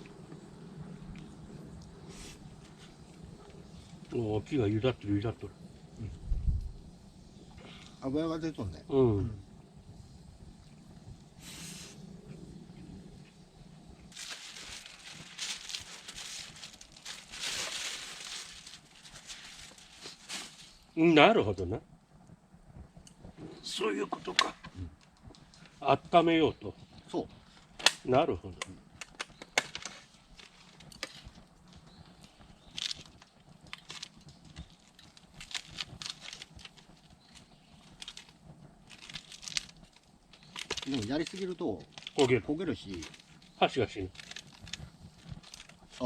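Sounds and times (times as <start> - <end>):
burning firewood hissing: 0.0 - 46.0
faint fire crackles: 0.0 - 46.0
sap boiling: 0.0 - 46.0
sharp pops and snaps: 21.9 - 46.0.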